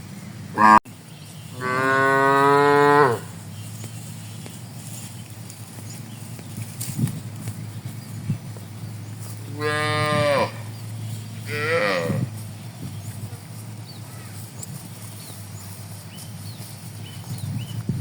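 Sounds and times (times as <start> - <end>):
cow mooing: 0.6 - 0.8, 1.6 - 3.3, 9.5 - 10.7, 11.5 - 12.3.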